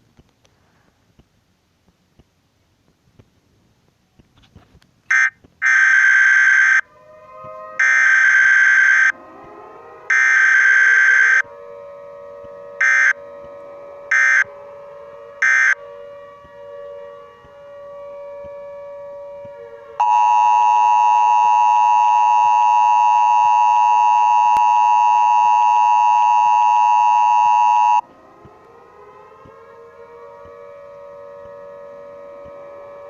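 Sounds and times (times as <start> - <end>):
harsh buzzer blasts: 12.8 - 13.2, 14.1 - 14.5, 20.0 - 28.0.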